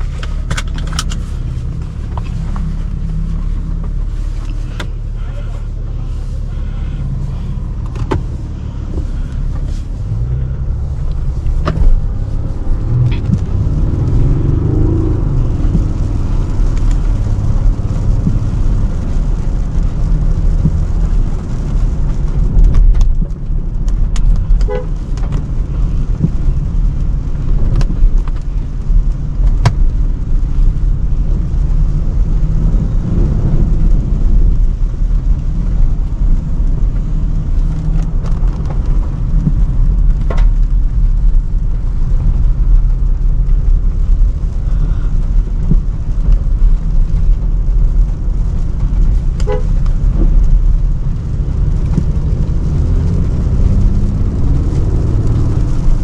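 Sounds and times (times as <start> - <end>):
car engine and road noise: 0.0 - 56.0
car horns tooting: 24.6 - 24.9, 49.4 - 49.8.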